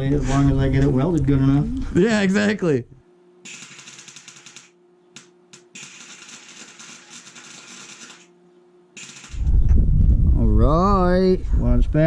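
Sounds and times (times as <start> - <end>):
welding arc crackling: 3.4 - 8.4, 9.0 - 9.6.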